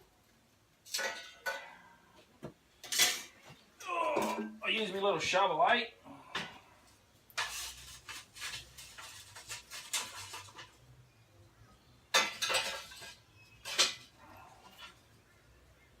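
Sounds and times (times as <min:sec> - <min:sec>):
metal shovel scraping rocks: 0:07.4 - 0:10.7.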